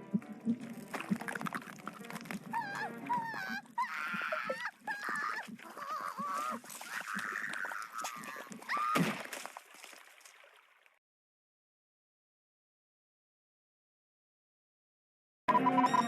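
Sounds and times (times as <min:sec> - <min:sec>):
squeaky cartoon voices shrieking: 0:02.4 - 0:09.0.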